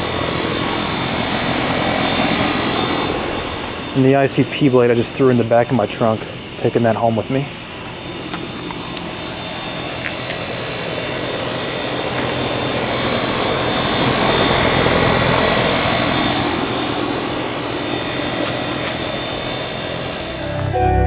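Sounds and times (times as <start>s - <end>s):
condenser fan air rushing: 0.0s - 20.3s
compressor low hum: 16.6s - 21.0s.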